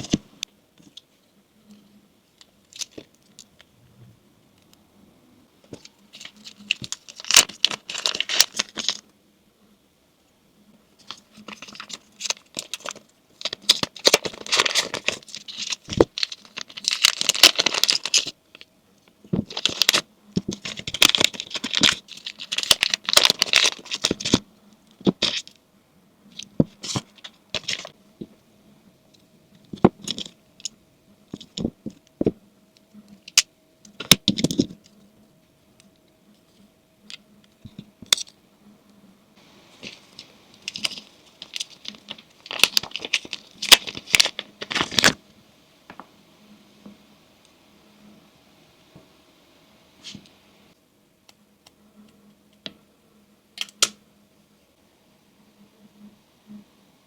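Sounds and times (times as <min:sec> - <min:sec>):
packaging tearing and rustling: 0:05.7 - 0:09.0, 0:11.0 - 0:18.6, 0:19.4 - 0:24.4, 0:25.0 - 0:25.5, 0:26.4 - 0:27.9, 0:39.6 - 0:45.2.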